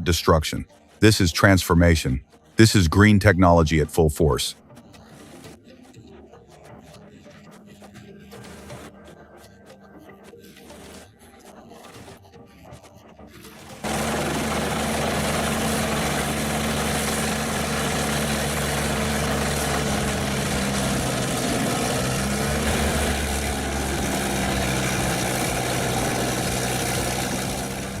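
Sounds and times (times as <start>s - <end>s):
heavy machine engine running: 13.6s - 28.0s.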